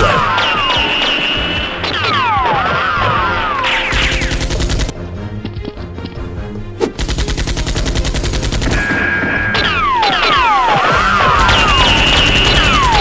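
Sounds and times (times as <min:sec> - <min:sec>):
background music: 0:00.0 - 0:13.0
automatic gunfire: 0:03.8 - 0:04.9, 0:07.0 - 0:09.0, 0:09.6 - 0:13.0.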